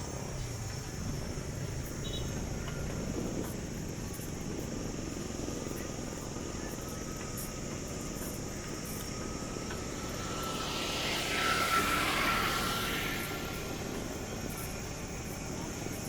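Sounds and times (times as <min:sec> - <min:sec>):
rumble of passing vehicles: 0:00.0 - 0:16.0
insects buzzing: 0:05.2 - 0:15.9.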